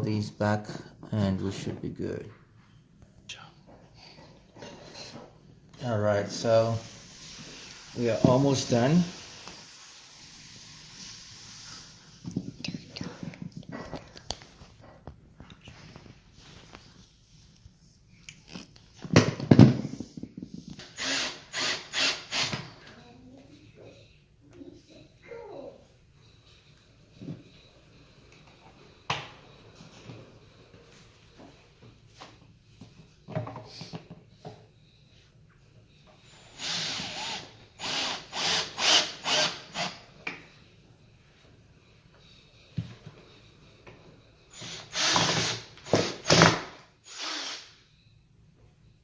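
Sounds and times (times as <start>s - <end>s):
power drill driving a screw: 21.0s - 22.6s, 36.3s - 40.0s, 44.5s - 47.8s.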